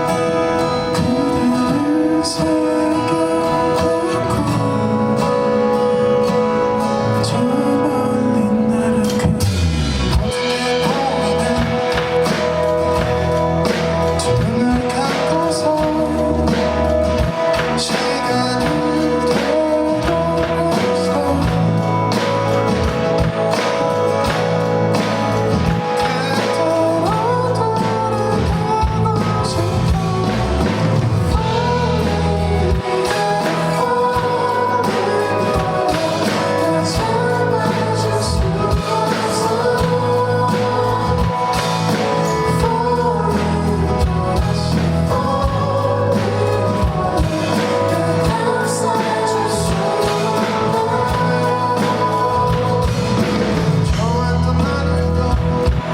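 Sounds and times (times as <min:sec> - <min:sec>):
band accompaniment: 0:00.0 - 0:55.9
man singing pop ballad: 0:00.0 - 0:55.9.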